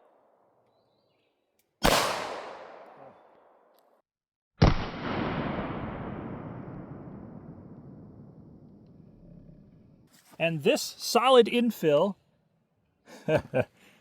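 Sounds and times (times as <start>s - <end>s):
gunshots with echo: 1.8s - 3.1s.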